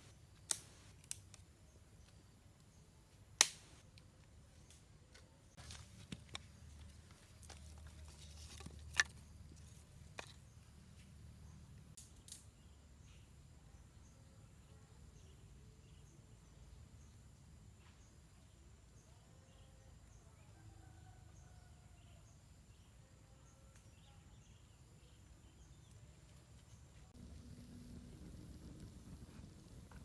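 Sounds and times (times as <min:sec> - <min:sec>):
low rumble: 0:27.2 - 0:30.0.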